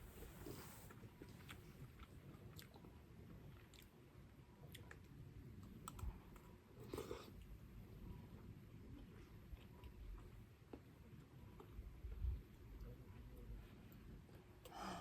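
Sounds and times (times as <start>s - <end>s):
chewing: 0.9s - 7.5s, 8.9s - 12.2s.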